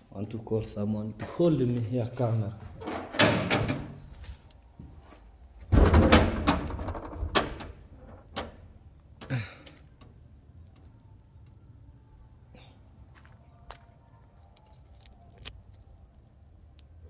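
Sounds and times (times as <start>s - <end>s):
knocks and thumps: 5.7s - 7.8s.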